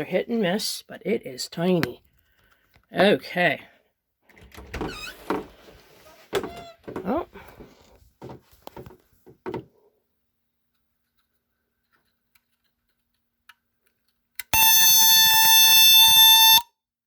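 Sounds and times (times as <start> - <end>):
high-pitched alarm tone: 14.6 - 16.7.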